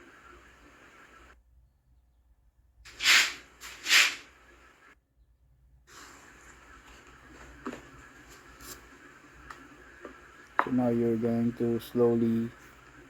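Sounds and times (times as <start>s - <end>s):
spray bottle squirts: 2.9s - 4.3s.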